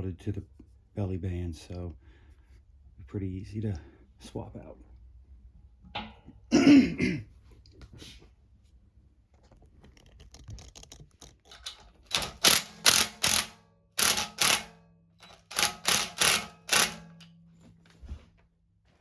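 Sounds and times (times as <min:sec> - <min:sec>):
hand tool rasping strokes: 0:15.2 - 0:17.0.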